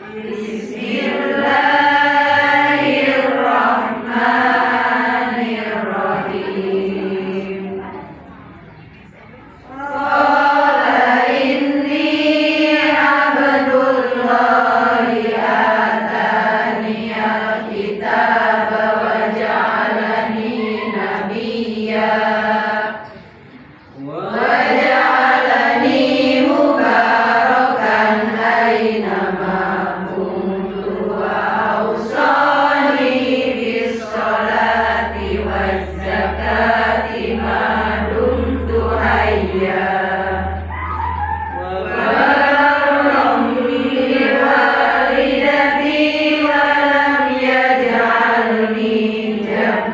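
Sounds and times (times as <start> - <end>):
person chanting recitation: 0.0 - 8.4, 9.6 - 49.9
steady low hum: 0.0 - 49.9.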